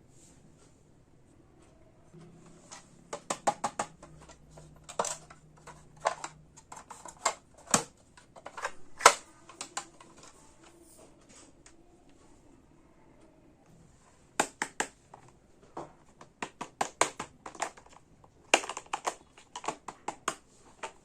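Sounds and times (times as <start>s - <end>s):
plastic toy pieces clicking: 3.1s - 10.3s, 16.4s - 21.0s.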